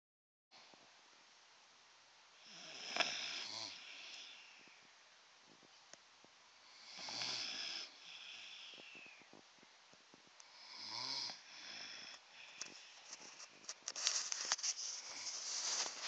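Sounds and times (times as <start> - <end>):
dog snoring: 2.4 - 4.7, 6.6 - 9.3, 10.4 - 13.0.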